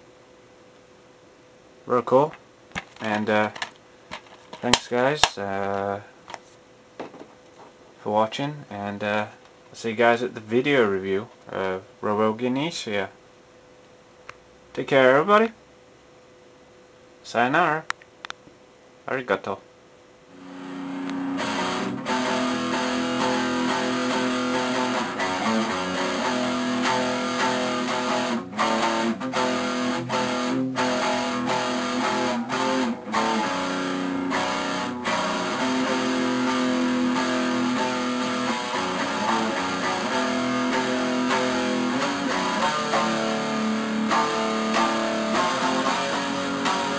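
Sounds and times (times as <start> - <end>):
strummed guitar music: 20.4 - 46.9.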